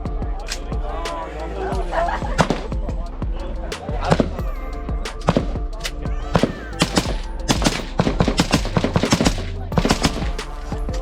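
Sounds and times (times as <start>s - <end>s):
background music: 0.0s - 11.0s
gunshots in rapid succession: 6.4s - 10.5s.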